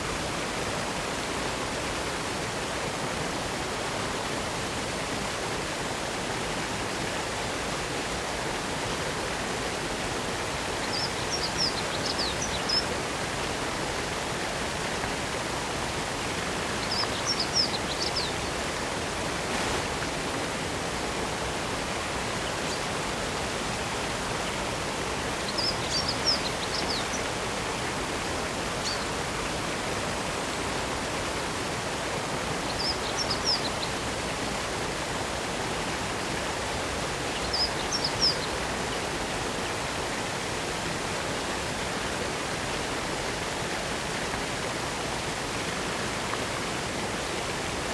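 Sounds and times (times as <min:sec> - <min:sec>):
waterfall rushing: 0:00.1 - 0:47.9
small songbird singing: 0:16.8 - 0:18.6, 0:25.5 - 0:27.3.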